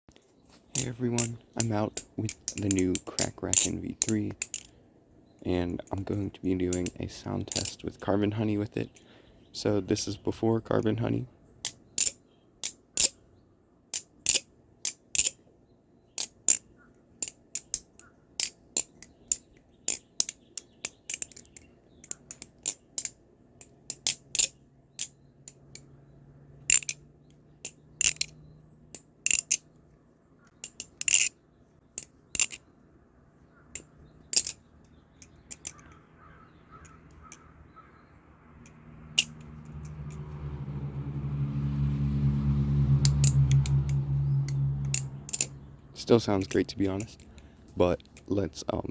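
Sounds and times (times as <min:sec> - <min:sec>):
butterfly knife metallic clicks: 0:16.2 - 0:25.9, 0:26.6 - 0:29.7, 0:30.5 - 0:31.3, 0:32.0 - 0:32.6, 0:33.7 - 0:36.1, 0:38.6 - 0:40.4, 0:43.0 - 0:45.6
low steady hum: 0:23.2 - 0:48.9.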